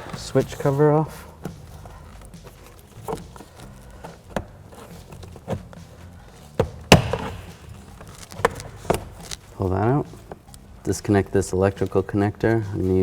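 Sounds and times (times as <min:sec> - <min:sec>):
plastic cover snapping: 0:06.9 - 0:09.4
plastic scraping crackle: 0:07.8 - 0:09.5.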